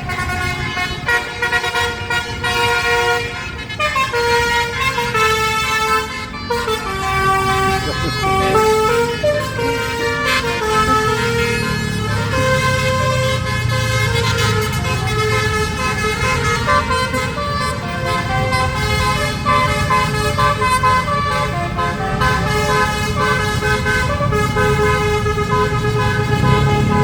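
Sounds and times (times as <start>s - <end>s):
bus engine running: 0.0s - 27.0s
multi-tone bus horn tune: 0.0s - 27.0s.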